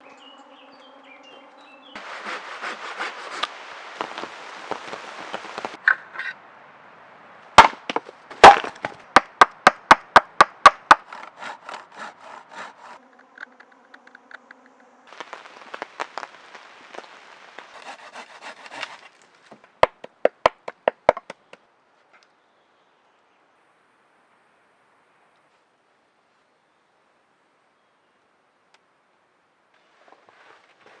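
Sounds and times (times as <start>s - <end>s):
blade scraping wood: 2.0s - 6.4s, 10.6s - 14.6s, 15.2s - 21.6s
wood knocking and cracking: 7.6s - 11.8s, 15.2s - 21.6s.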